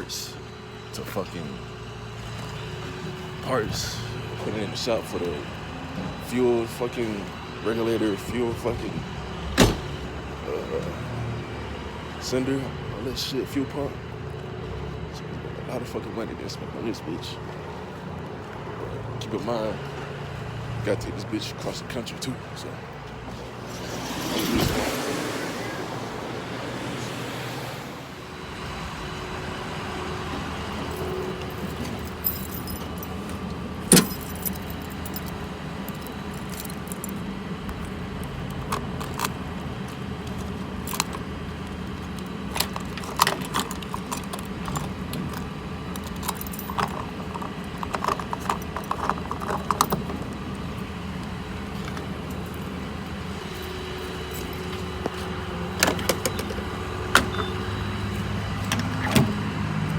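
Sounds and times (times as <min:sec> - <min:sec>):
engine and road hum: 0:00.0 - 0:59.9
light metallic clicks and jangles: 0:30.9 - 0:39.4, 0:42.6 - 0:50.3.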